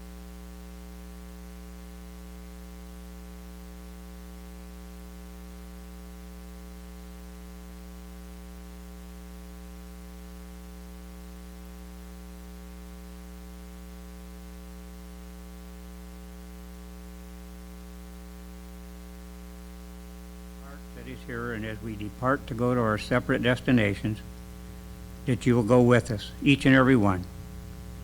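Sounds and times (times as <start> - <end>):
electrical mains hum: 16.2 - 28.0
constant hiss: 19.4 - 28.0.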